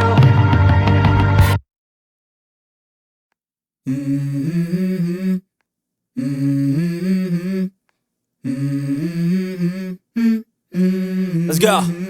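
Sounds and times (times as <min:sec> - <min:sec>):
hummed vocal melody: 0:03.9 - 0:05.5, 0:06.2 - 0:07.8, 0:08.4 - 0:12.0.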